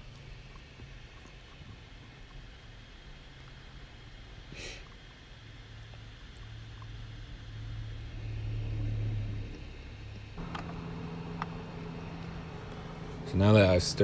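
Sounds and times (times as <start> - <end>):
low mechanical motor hum: 0.0 - 14.0.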